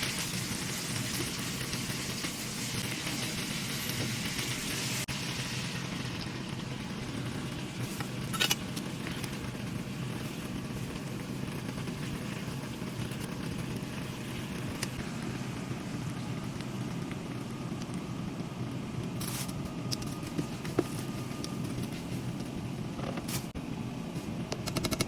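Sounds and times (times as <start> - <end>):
food sizzling in a pan: 0.0 - 16.6.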